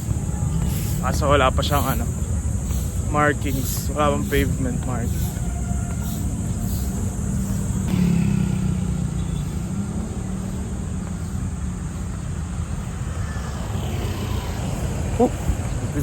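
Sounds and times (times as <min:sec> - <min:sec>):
vehicle engines running: 0:00.0 - 0:16.0
vehicle passing close: 0:00.0 - 0:16.0.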